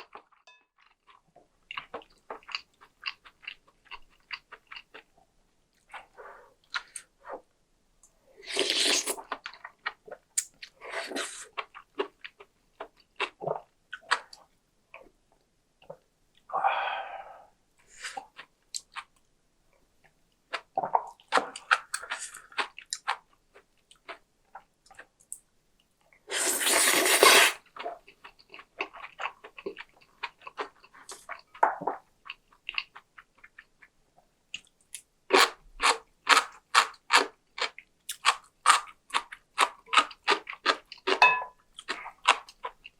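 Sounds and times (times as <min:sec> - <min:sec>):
chewing crunchy food: 0:00.0 - 0:05.2, 0:08.5 - 0:15.2, 0:20.5 - 0:25.2, 0:27.0 - 0:34.0, 0:34.6 - 0:42.9.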